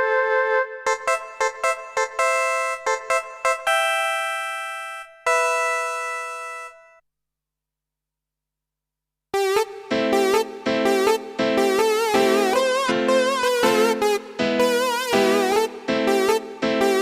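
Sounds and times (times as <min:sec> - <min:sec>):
keyboard chord stabs: 0:00.1 - 0:06.9, 0:09.4 - 0:17.0
synth lead with bending pitch: 0:09.4 - 0:17.0.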